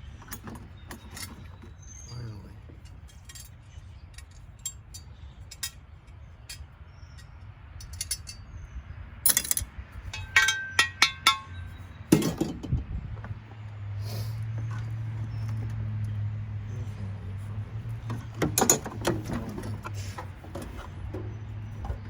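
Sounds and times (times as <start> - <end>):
metal tools clinking: 0.2 - 8.5, 9.3 - 12.7, 18.0 - 22.0.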